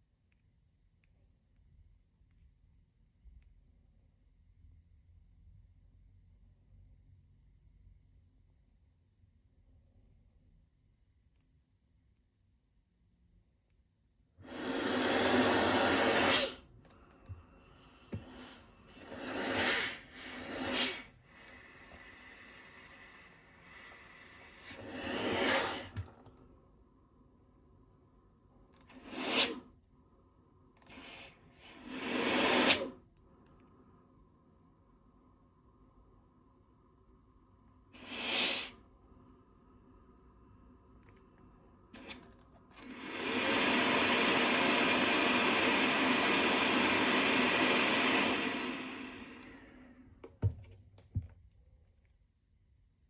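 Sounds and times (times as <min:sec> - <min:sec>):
blower rush of air: 0:14.4 - 0:16.6, 0:18.0 - 0:26.0, 0:42.9 - 0:50.0.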